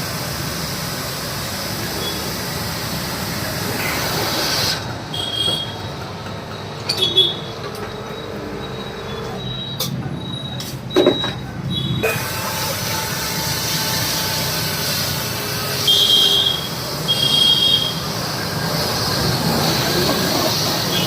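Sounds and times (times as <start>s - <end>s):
pressure washer pump humming: 0.0s - 6.1s, 12.0s - 21.0s.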